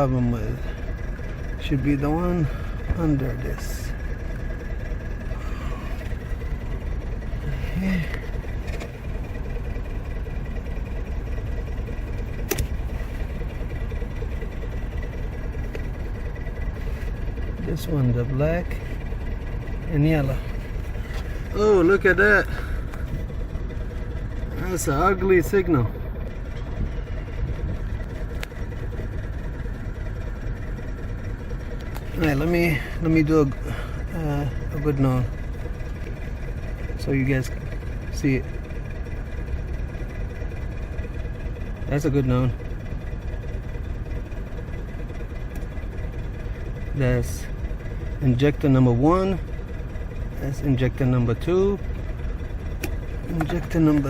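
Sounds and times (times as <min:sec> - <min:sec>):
car engine idling with misfire: 0:00.0 - 0:54.0
sharp click: 0:12.5 - 0:12.8.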